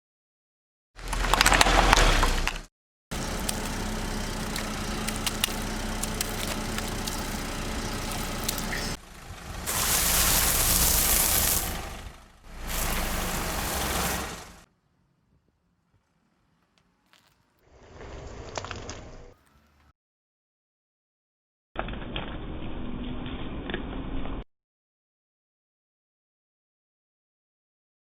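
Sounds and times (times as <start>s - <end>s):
car engine running: 1.0s - 14.7s
loud hissing rush: 3.1s - 14.7s.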